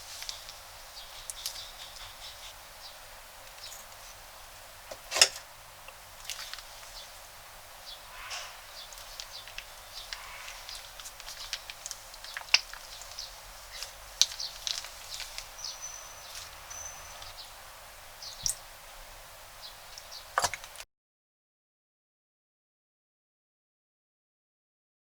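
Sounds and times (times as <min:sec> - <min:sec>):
crunchy slime crackling: 0:00.0 - 0:17.5.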